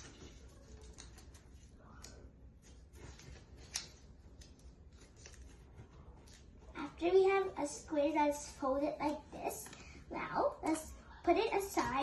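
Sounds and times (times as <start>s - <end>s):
paper being folded and creased: 0.0s - 6.5s
paper crinkles: 0.0s - 6.6s.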